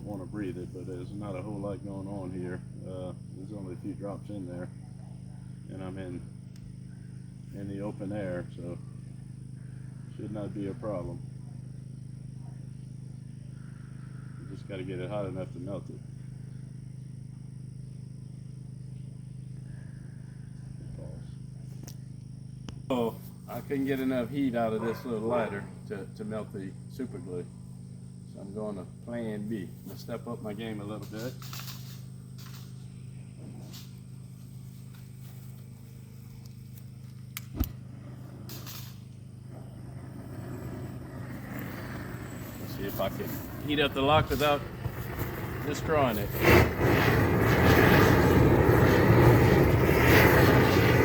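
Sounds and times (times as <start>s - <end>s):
faint high-pitched whine: 0.0s - 51.0s
low mechanical hum: 0.0s - 51.0s
sharp click: 37.3s - 37.8s.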